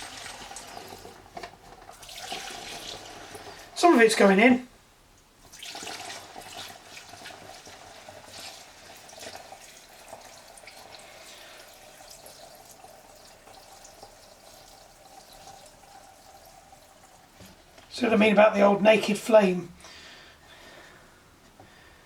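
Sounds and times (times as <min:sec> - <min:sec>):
fuel trickling through a funnel: 0:00.0 - 0:03.8, 0:05.2 - 0:18.0.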